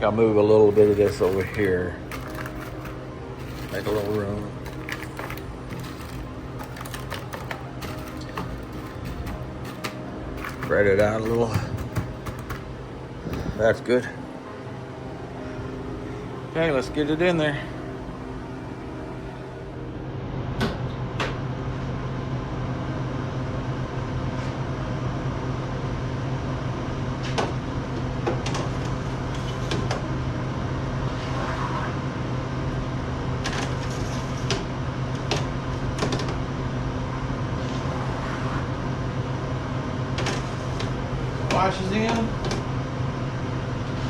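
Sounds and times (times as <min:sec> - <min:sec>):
freeze dryer humming: 0:00.0 - 0:21.8, 0:39.1 - 0:44.0
metal trays clicking and clanking: 0:00.7 - 0:13.7.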